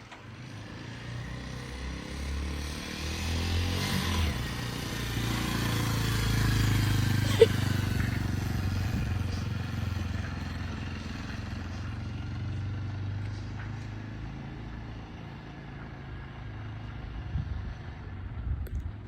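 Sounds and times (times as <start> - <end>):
motorcycle engine idling: 5.7 - 12.8.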